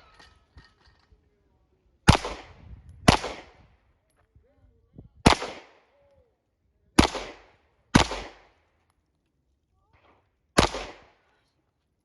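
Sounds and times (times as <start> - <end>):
handgun shots with echo: 2.1 - 3.6, 10.6 - 11.1.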